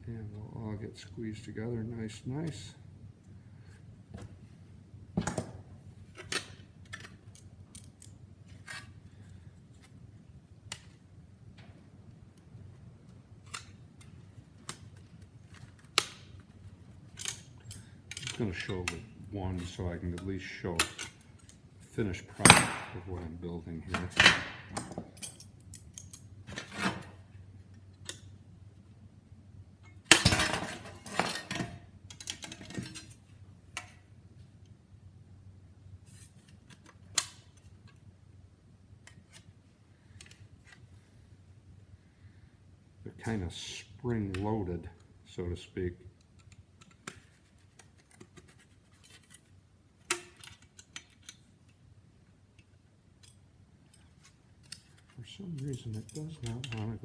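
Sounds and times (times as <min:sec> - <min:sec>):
metal parts clicking and scraping: 0:13.4 - 0:23.2, 0:23.9 - 0:27.2, 0:30.1 - 0:33.9, 0:46.2 - 0:51.8, 0:53.2 - 0:57.0
sheet metal parts clinking: 0:22.1 - 0:27.2, 0:30.1 - 0:33.2, 0:53.2 - 0:57.0.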